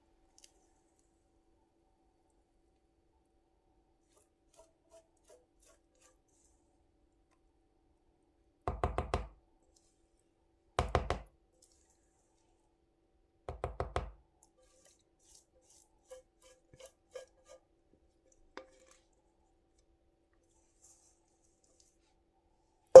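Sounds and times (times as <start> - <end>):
batter being scraped: 4.0 - 6.7.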